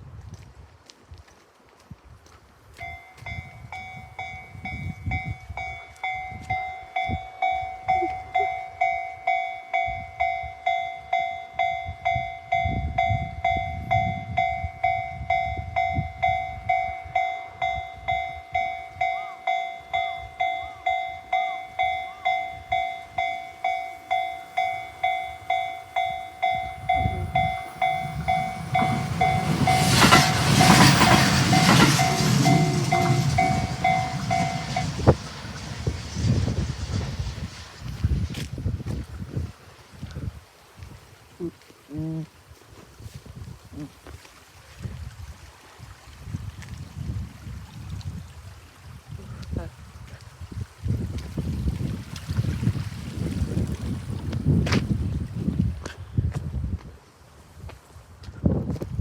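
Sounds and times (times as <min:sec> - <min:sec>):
level crossing bell: 0:02.8 - 0:35.2
train passing: 0:02.8 - 0:38.8.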